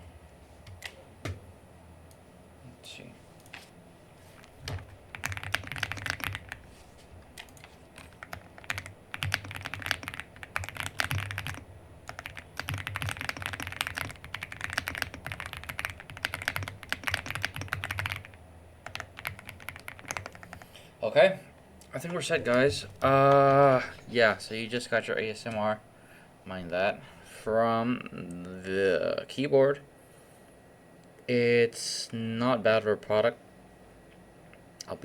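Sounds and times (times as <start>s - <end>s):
mechanical keyboard typing: 4.4s - 6.7s, 7.4s - 20.6s.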